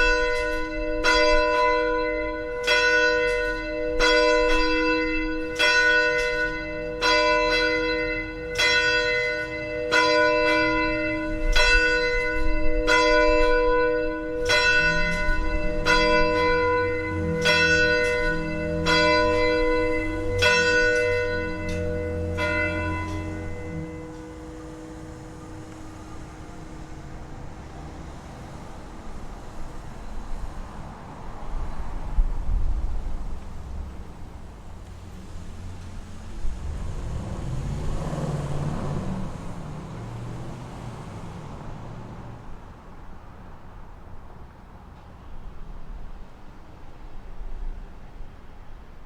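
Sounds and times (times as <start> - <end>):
tower bells ringing: 0.0 - 30.6.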